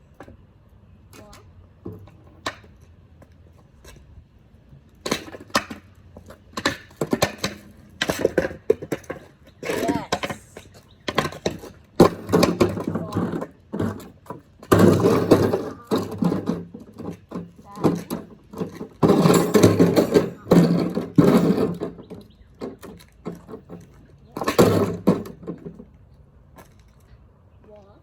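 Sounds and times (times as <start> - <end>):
objects banging on ground: 5.0 - 25.9.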